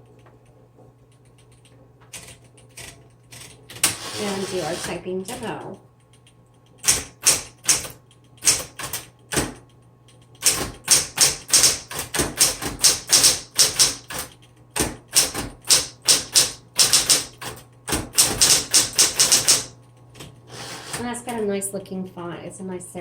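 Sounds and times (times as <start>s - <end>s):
typewriter motor hum: 1.3s - 21.4s
typewriter keystroke clicks: 6.1s - 20.3s.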